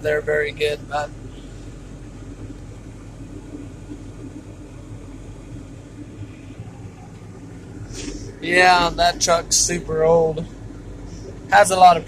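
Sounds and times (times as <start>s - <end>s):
tractor engine drone: 0.0s - 12.0s.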